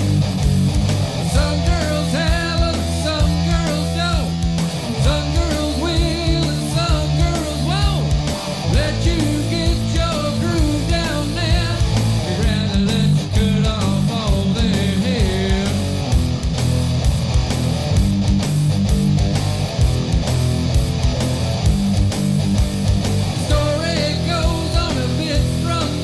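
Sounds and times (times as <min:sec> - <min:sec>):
electric guitar: 0:00.0 - 0:26.0
steady drum beat: 0:00.0 - 0:26.0
person singing: 0:01.2 - 0:16.1, 0:23.4 - 0:26.0.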